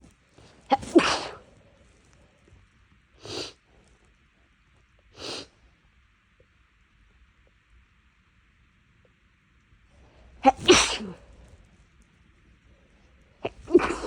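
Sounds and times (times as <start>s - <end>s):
person sneezing: 0.7s - 1.5s, 3.2s - 3.6s, 5.2s - 5.5s, 10.4s - 11.3s, 13.4s - 14.0s.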